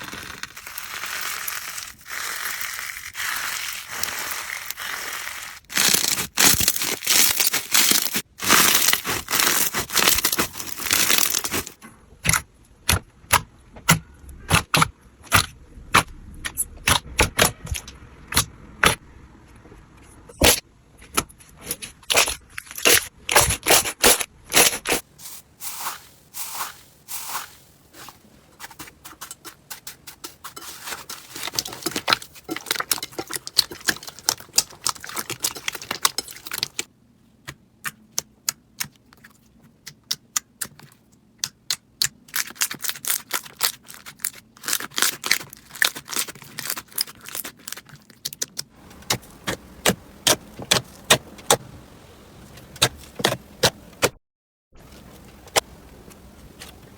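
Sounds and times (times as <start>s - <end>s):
slime crackling and crunching: 0.0s - 13.4s, 21.6s - 28.7s, 30.6s - 36.9s, 42.2s - 51.6s.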